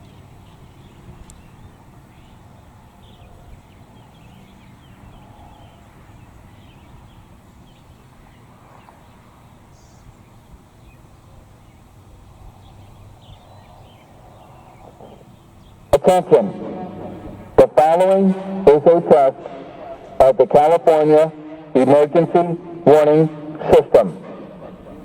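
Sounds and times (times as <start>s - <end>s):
faint bird calls: 0.0s - 17.6s
steady low rumble: 0.0s - 25.0s.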